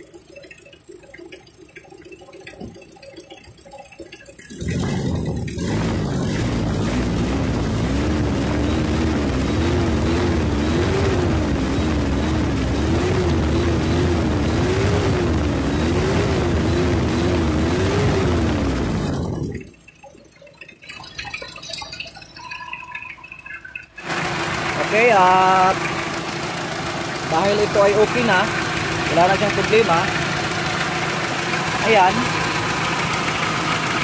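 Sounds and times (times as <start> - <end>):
diesel engine revving: 4.5 - 19.7, 24.0 - 34.0.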